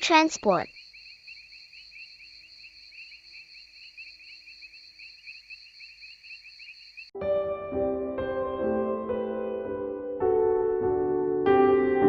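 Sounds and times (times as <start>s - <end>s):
insects chirring: 0.1s - 7.1s.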